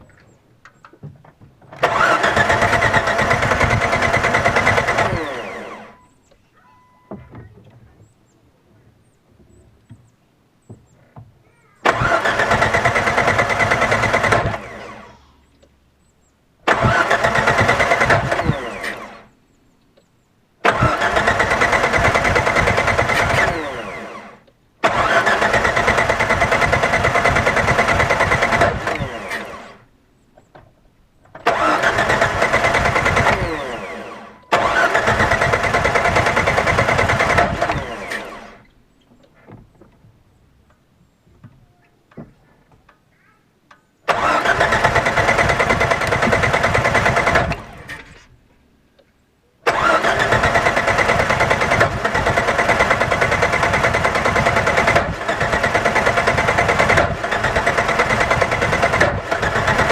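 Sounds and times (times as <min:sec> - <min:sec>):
engine cranking on starter: 0:00.1 - 0:06.2, 0:11.8 - 0:15.3, 0:16.6 - 0:19.4, 0:20.6 - 0:29.9, 0:31.2 - 0:39.6, 0:44.0 - 0:48.4, 0:49.6 - 0:59.9.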